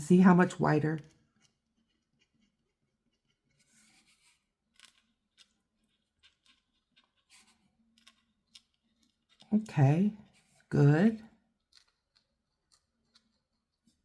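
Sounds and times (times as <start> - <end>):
pen scratching on paper: 5.9 - 7.7.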